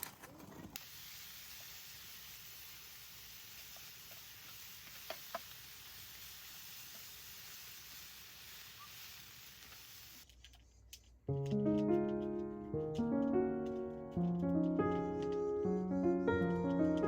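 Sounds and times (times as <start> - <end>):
faint steady hiss: 0.2 - 10.9.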